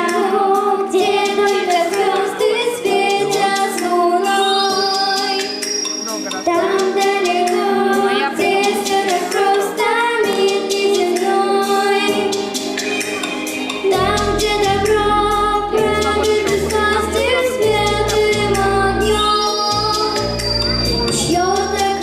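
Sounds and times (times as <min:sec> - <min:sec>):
woman singing: 0:00.0 - 0:05.6, 0:06.4 - 0:12.4, 0:13.8 - 0:20.3, 0:21.2 - 0:22.0
percussion beat: 0:05.0 - 0:09.6, 0:12.1 - 0:22.0
bass line: 0:13.9 - 0:22.0.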